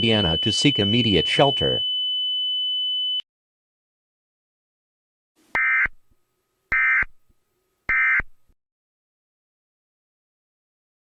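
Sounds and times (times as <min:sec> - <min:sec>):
high-pitched sine tone: 0:00.0 - 0:01.8.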